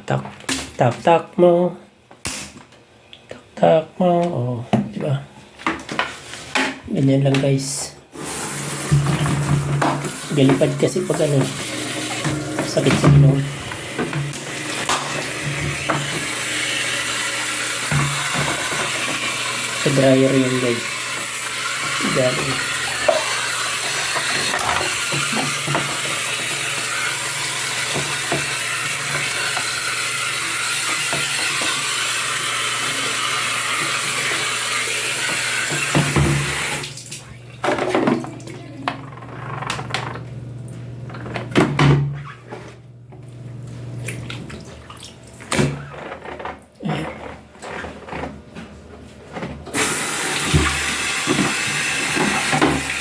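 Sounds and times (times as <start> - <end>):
running water rushing: 8.2 - 38.9.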